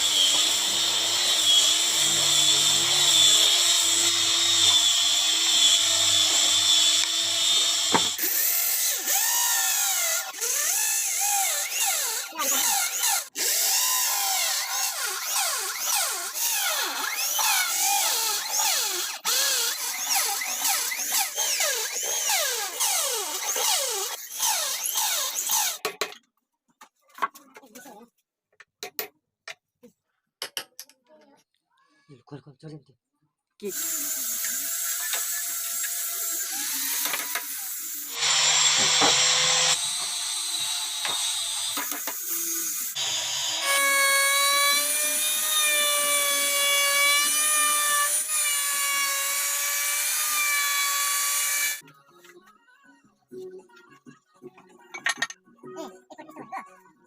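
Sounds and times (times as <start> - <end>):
power tool whining: 0.0 - 25.7, 38.1 - 51.8.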